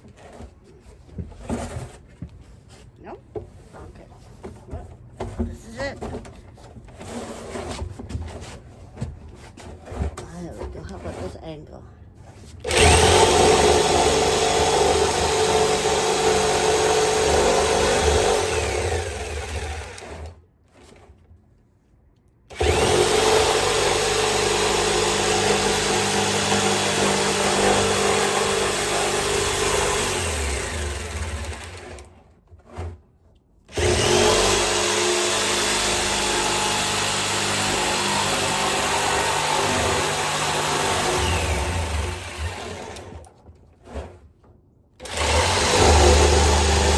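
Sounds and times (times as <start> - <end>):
jigsaw cutting metal barrel: 12.6 - 20.4, 22.5 - 32.8, 33.7 - 43.3, 45.0 - 46.9.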